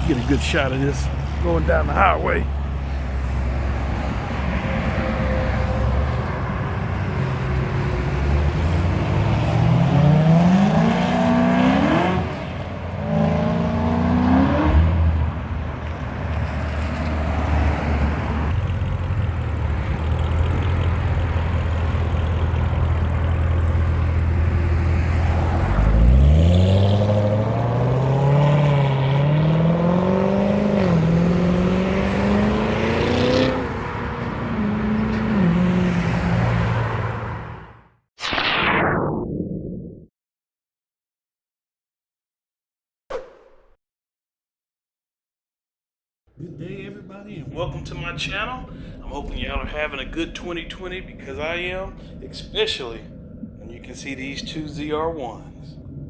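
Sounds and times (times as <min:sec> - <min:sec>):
car engine revving through gears: 0:07.7 - 0:15.3, 0:25.3 - 0:36.5.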